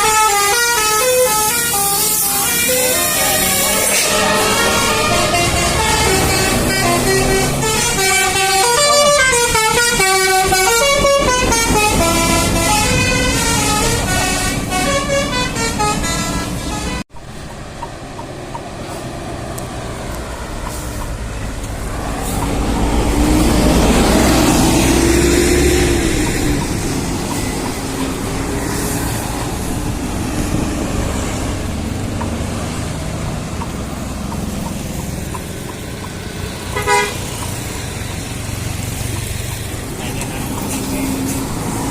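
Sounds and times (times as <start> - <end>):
multi-tone bus horn melody: 0.0 - 17.1, 22.0 - 31.8, 34.7 - 39.6
bus engine rumble passing: 0.0 - 41.9.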